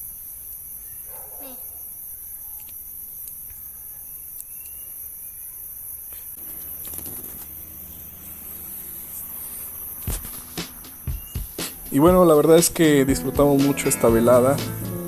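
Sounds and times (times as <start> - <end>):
crickets trilling: 0.0 - 12.0.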